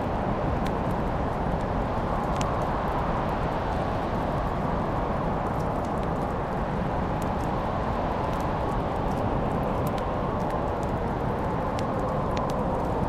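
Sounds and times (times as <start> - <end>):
low rushing of flame: 0.0 - 13.0
wood fire crackling: 0.0 - 13.0.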